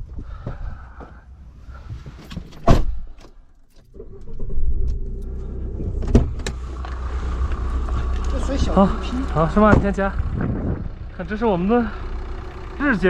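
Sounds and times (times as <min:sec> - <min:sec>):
engine starting and idling: 0:03.7 - 0:13.0.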